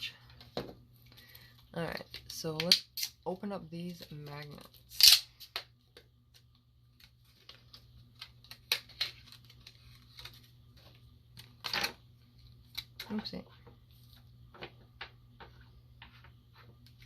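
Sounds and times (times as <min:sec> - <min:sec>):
package rustling: 0:07.0 - 0:11.8.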